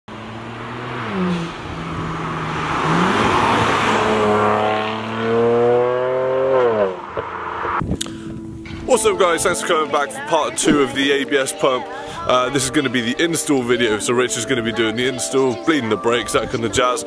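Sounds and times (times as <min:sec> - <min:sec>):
car engine running under load: 0:00.1 - 0:07.9.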